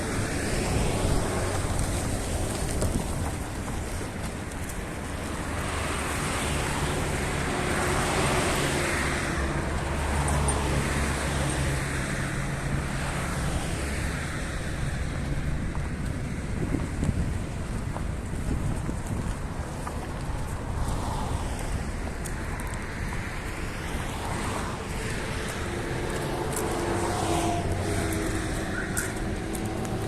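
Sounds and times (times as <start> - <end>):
traffic noise: 0.0 - 30.0
vehicle passing: 20.6 - 30.0.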